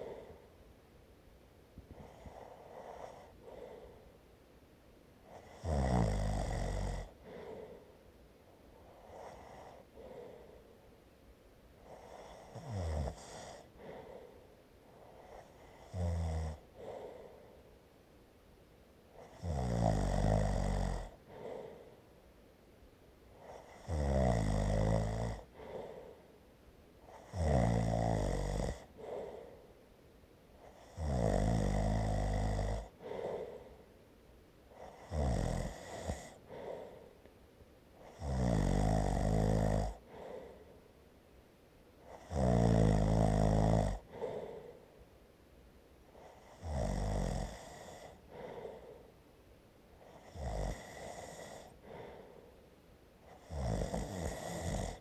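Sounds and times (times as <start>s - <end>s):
soft breathing: 0.0s - 5.6s, 7.0s - 19.4s, 21.0s - 23.8s, 25.4s - 27.3s, 28.8s - 31.0s, 32.7s - 35.1s, 35.7s - 38.2s, 39.9s - 42.3s, 44.0s - 46.6s, 47.4s - 55.0s
person snoring: 5.4s - 7.7s, 19.3s - 21.7s, 23.5s - 26.0s, 27.2s - 29.4s, 30.8s - 33.7s, 34.8s - 37.0s, 38.0s - 40.5s, 42.1s - 44.7s, 46.3s - 49.0s, 50.1s - 52.4s, 53.3s - 55.0s.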